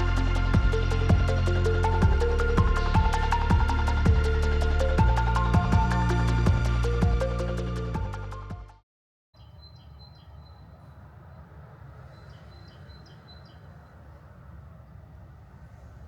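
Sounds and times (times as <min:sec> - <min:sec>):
steady low rumble: 0:00.0 - 0:08.6, 0:10.6 - 0:16.0
background music: 0:00.0 - 0:08.8
small birds chirping: 0:09.4 - 0:14.3.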